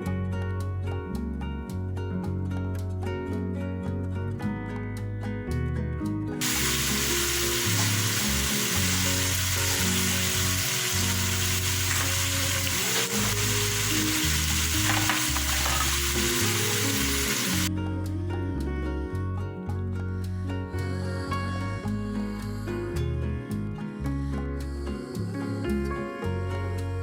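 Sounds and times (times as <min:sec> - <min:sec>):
guitar music: 0:00.0 - 0:27.0
food sizzling in hot oil: 0:06.4 - 0:17.7.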